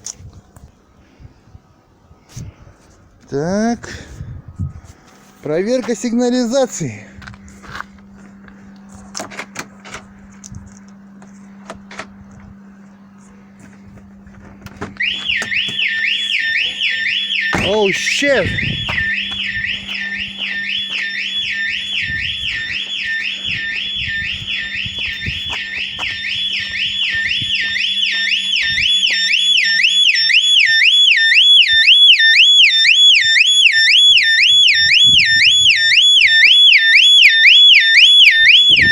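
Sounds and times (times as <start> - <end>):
warbling car alarm siren: 14.7 - 38.9.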